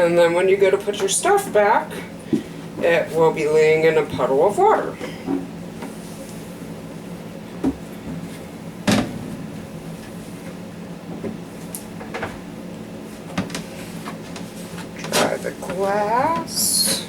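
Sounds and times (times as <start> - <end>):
steady low hum: 0.0 - 17.0
refrigerator shelves knocking: 8.8 - 9.7.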